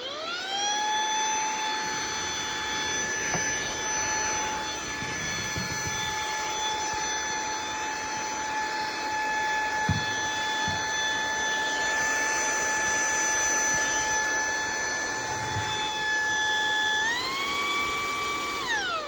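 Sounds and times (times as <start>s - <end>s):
handheld vacuum cleaner whining: 0.0s - 19.0s
light knocks: 9.8s - 11.1s.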